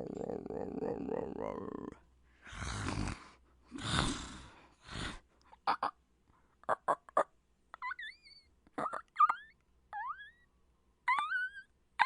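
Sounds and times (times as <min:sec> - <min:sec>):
person growling: 0:00.0 - 0:05.2
high squealing cry: 0:07.8 - 0:10.5, 0:11.1 - 0:11.7.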